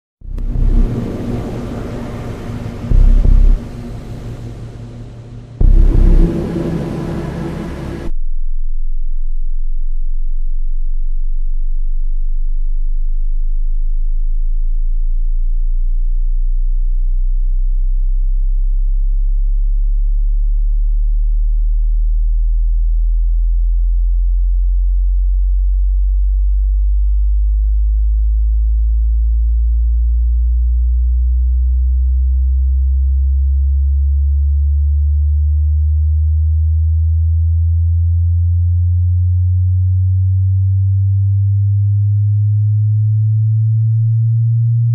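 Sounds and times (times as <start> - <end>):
rising sine tone sweep: 0.2 - 8.3.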